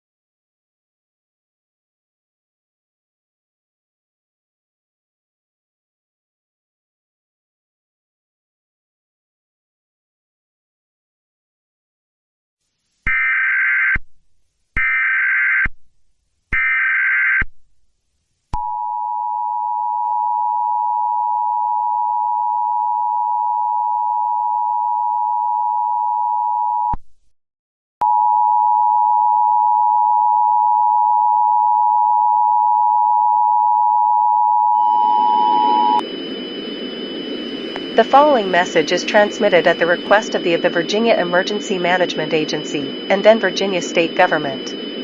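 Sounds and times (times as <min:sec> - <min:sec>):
two-tone attention signal: 0:34.7 - 0:36.0, 0:37.8 - 0:44.7.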